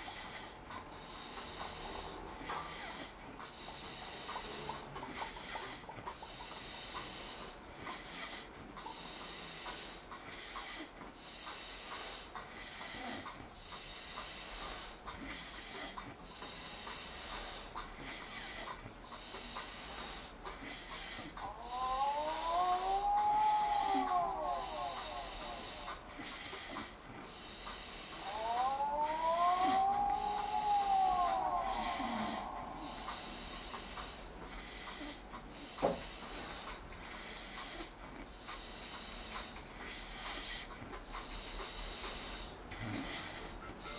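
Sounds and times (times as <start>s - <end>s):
whistling tone on breaths: 0.0s - 43.9s
man snoring: 18.3s - 36.7s.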